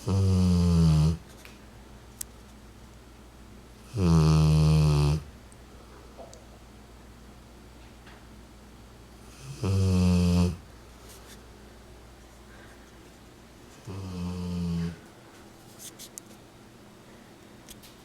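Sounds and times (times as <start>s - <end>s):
dog snoring: 0.0s - 1.2s, 3.8s - 5.3s, 9.2s - 10.7s, 13.9s - 15.0s.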